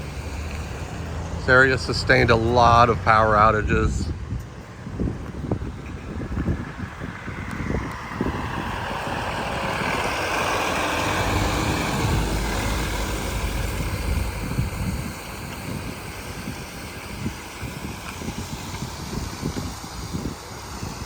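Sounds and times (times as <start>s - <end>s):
vehicle passing by: 0.0s - 20.4s.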